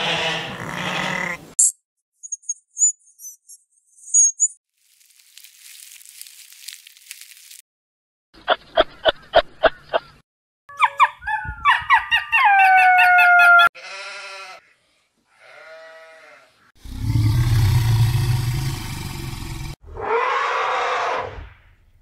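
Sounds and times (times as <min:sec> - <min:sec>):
drawn-out falling animal calls: 0:00.0 - 0:01.6
loud low rumble: 0:16.9 - 0:19.8.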